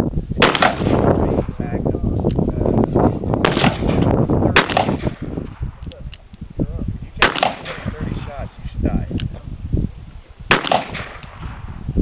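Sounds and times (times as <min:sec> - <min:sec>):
gunshots: 0:00.4 - 0:01.6, 0:03.4 - 0:06.2, 0:07.2 - 0:08.5, 0:10.5 - 0:11.8.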